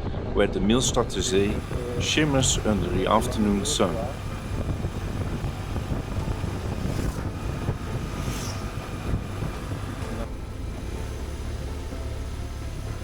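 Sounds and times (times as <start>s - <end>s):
wind rushing over microphone: 0.0s - 10.3s
motorcycle engine and road drone: 0.8s - 13.0s.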